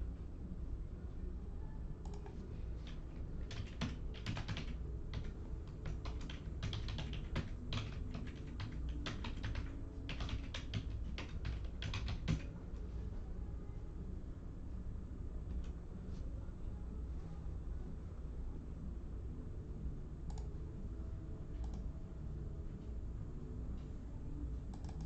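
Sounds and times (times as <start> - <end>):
steady low hum: 0.0 - 25.0
typing on computer keyboard: 2.0 - 12.5, 24.7 - 25.0.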